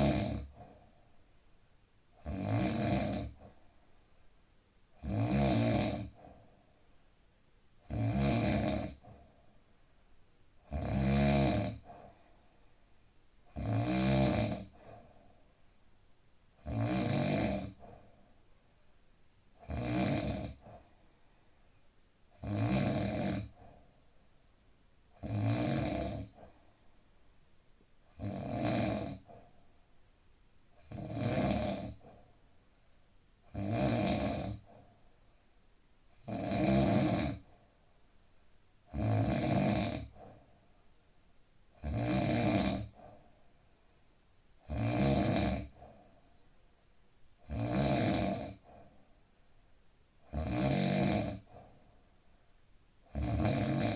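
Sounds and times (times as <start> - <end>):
man snoring: 0.0 - 0.6, 2.2 - 3.5, 5.0 - 6.3, 7.9 - 9.1, 10.7 - 11.9, 13.5 - 14.8, 16.6 - 17.9, 19.6 - 20.8, 22.4 - 23.6, 25.2 - 26.5, 28.1 - 29.4, 30.8 - 32.1, 33.5 - 34.8, 36.2 - 37.4, 38.9 - 40.2, 41.8 - 43.0, 44.6 - 45.9, 47.4 - 48.8, 50.3 - 51.6, 53.1 - 53.9
quiet breathing: 0.0 - 53.9.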